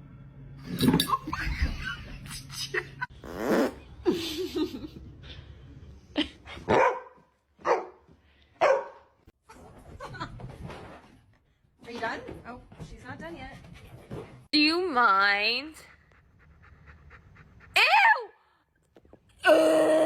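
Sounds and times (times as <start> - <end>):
dog barking: 6.7 - 8.0, 8.6 - 9.1.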